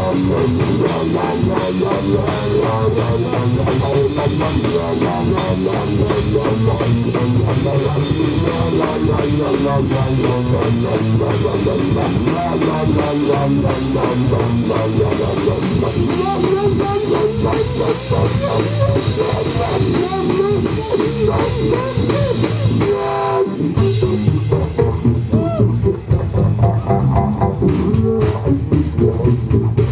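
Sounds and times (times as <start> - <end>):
drum kit beat: 0.0 - 29.9
funk-rock band playing: 0.0 - 29.9
guitar lead line bending pitch: 0.0 - 29.9.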